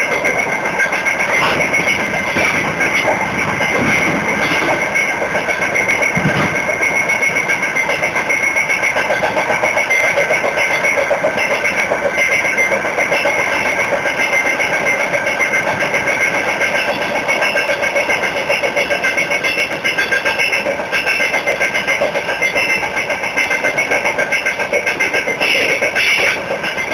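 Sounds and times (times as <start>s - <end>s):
metallic ringing: 0.0s - 26.9s
train wheels clattering on rails: 0.0s - 26.9s.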